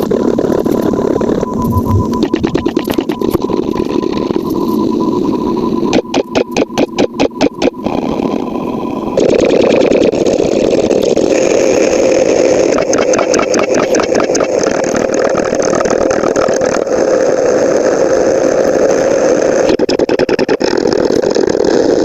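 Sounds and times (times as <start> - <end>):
engine running: 1.4 - 3.7.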